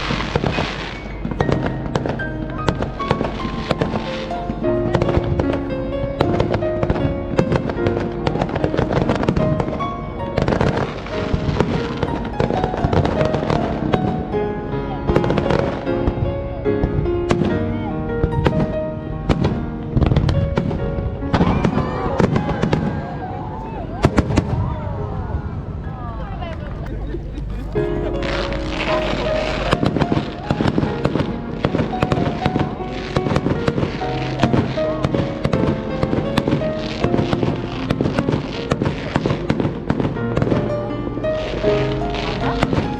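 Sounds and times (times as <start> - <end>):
fireworks crackle: 0.0 - 16.2, 16.8 - 42.9
fireworks bangs: 0.0 - 42.9
music: 0.0 - 42.9.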